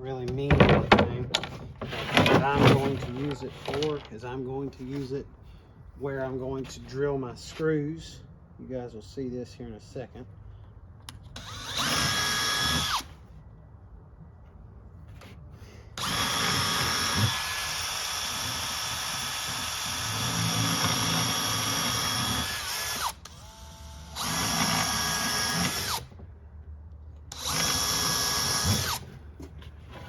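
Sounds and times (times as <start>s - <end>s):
power drill boring through wood: 11.4s - 13.1s, 16.0s - 26.1s, 27.3s - 29.1s.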